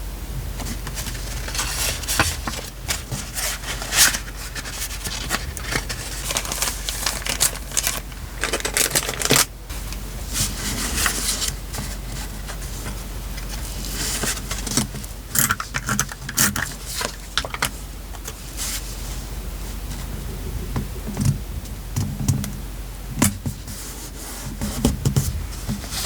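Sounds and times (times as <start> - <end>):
paper rustling and scraping: 0.6 - 9.5, 10.3 - 19.3.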